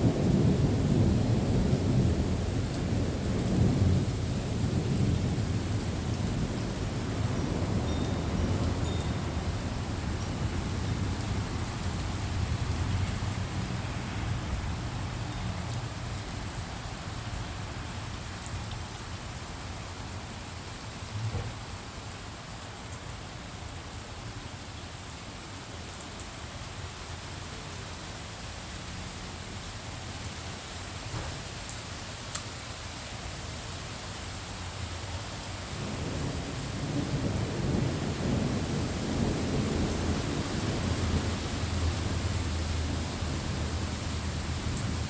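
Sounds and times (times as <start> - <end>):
low thunder rumble: 0.0 - 16.0, 35.8 - 45.0
steady rain: 0.0 - 45.0
brief thump: 21.3 - 21.6, 31.1 - 31.4.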